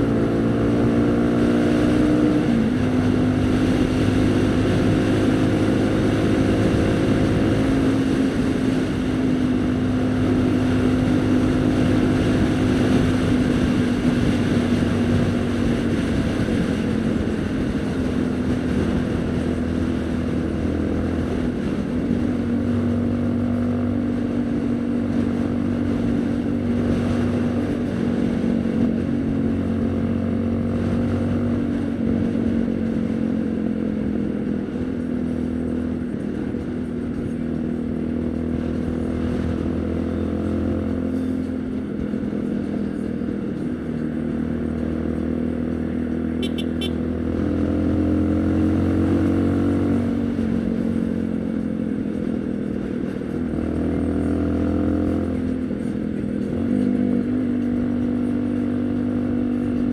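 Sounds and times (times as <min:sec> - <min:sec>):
wind noise on microphone: 0:00.0 - 0:40.6
motorcycle engine cruising: 0:00.0 - 0:59.9.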